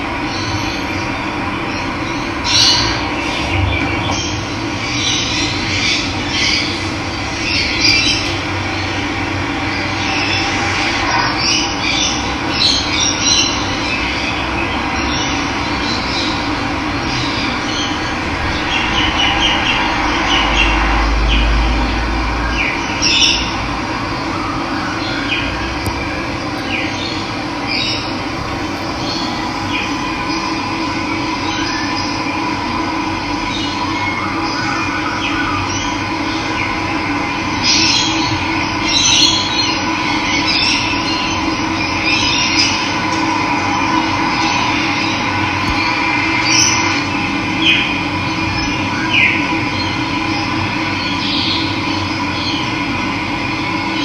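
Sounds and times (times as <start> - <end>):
low rumble: 13.8 - 33.8
birds calling: 25.0 - 32.2.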